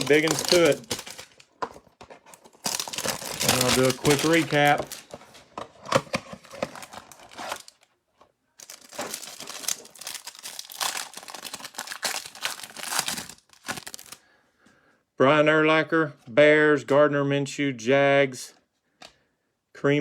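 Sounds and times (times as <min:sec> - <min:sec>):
packaging crinkling and tearing: 0:00.0 - 0:07.9, 0:08.6 - 0:14.2.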